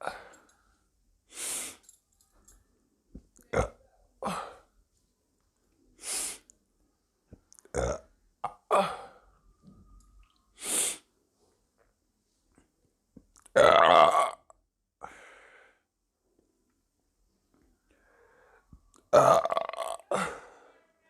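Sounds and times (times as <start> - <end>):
woman burping: 3.5 - 4.6, 7.7 - 9.2, 13.5 - 14.4, 19.1 - 20.5.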